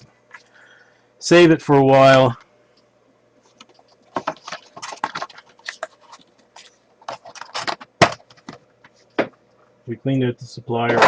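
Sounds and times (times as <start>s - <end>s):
packaging crinkling and tapping: 3.5s - 9.4s.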